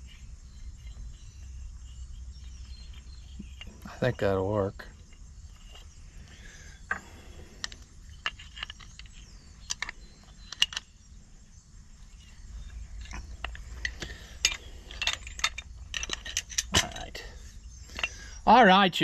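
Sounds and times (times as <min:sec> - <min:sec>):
hand tools clicking on metal: 0:12.6 - 0:18.4.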